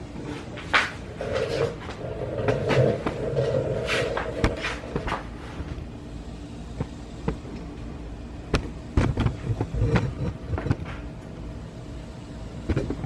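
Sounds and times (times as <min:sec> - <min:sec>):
low background hum: 0:00.0 - 0:13.0
sharp clicks and knocks: 0:08.5 - 0:11.1.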